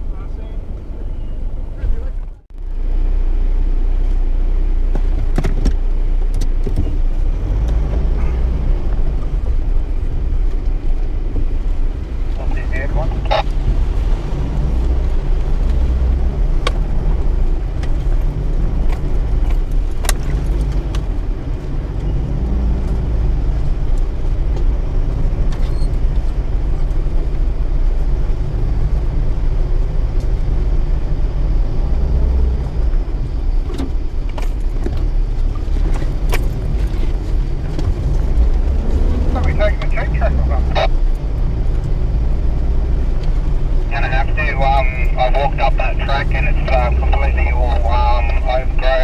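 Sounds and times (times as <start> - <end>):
engine and drivetrain rumble: 0.0 - 49.0
body knocks and rattles: 4.9 - 7.2.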